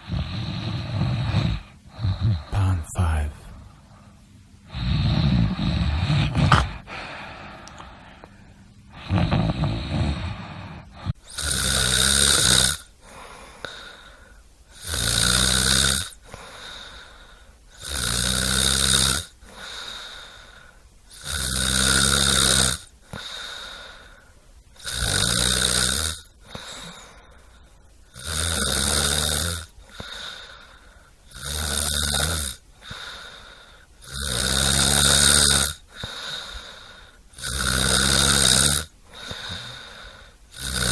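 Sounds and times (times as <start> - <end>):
person snoring: 0.0 - 3.6, 4.7 - 8.3, 8.9 - 24.2, 24.8 - 27.3, 28.1 - 40.9
faint breaths: 0.0 - 11.3, 13.0 - 14.9, 16.2 - 17.8, 19.4 - 21.2, 22.9 - 24.8, 26.2 - 28.1, 29.7 - 31.3, 32.7 - 34.0, 35.8 - 37.4, 38.9 - 40.9.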